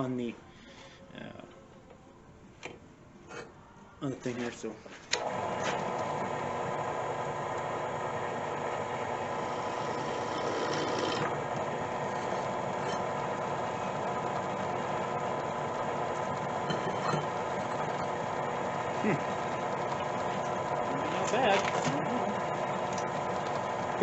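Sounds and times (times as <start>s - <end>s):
drill bit cutting metal: 5.3s - 24.0s.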